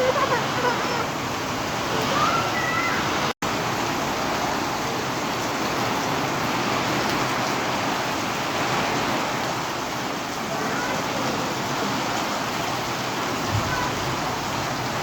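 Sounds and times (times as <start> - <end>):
heavy rain pouring: 0.0 - 15.0.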